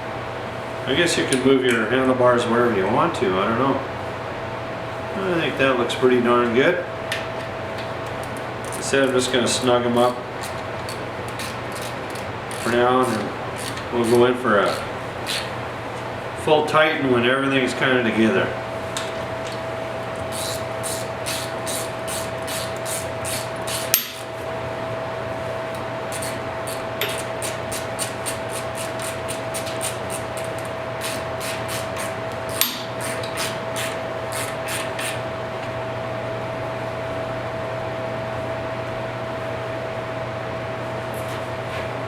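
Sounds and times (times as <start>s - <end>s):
steady hum: 0.0s - 42.0s
ratchet wrench clicking: 10.4s - 15.5s, 20.3s - 24.3s, 26.1s - 35.1s.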